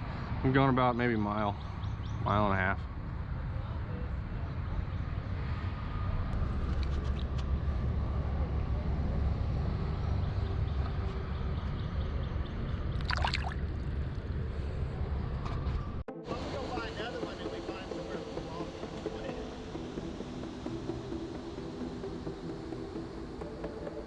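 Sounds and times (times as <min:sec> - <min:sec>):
low rumble: 0:05.2 - 0:23.8
river water gurgling: 0:13.0 - 0:13.7.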